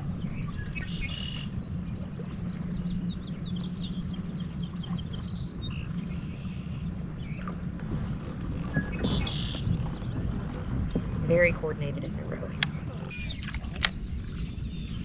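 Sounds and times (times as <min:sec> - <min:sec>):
low rumble: 0:00.0 - 0:15.0
small bird chirping: 0:13.0 - 0:13.6.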